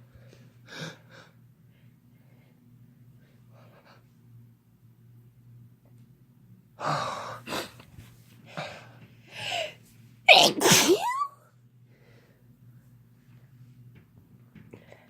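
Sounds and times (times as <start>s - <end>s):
person sneezing: 10.3s - 11.3s.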